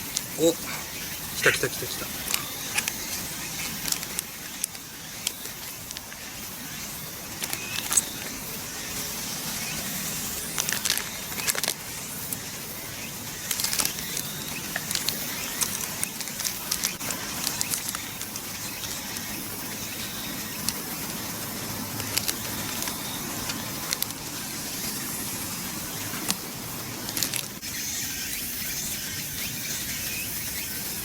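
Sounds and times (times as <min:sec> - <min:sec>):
plastic film peeling and crackling: 0:02.2 - 0:06.3, 0:07.3 - 0:08.5, 0:10.4 - 0:12.5, 0:13.3 - 0:19.4, 0:21.8 - 0:25.1, 0:25.9 - 0:27.6.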